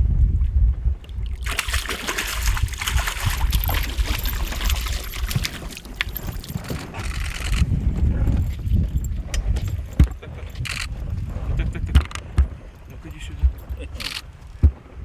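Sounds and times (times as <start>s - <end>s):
wind rumble on microphone: 0.0s - 15.0s
water splashing and trickling: 1.0s - 12.0s
small clicks: 5.4s - 7.7s, 10.6s - 10.9s, 13.9s - 14.5s.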